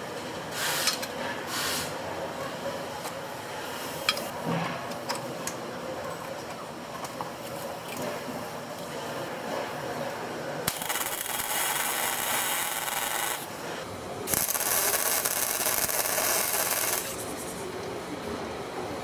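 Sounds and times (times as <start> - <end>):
air tool hissing: 14.3 - 17.4.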